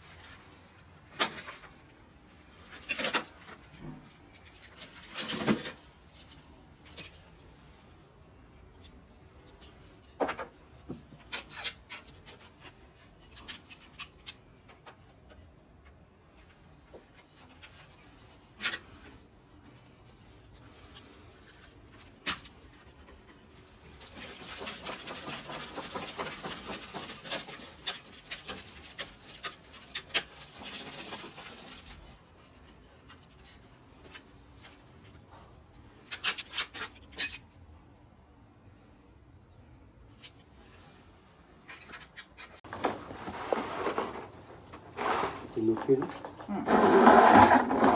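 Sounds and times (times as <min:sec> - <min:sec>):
scraping and rubbing: 0:41.7 - 0:47.9.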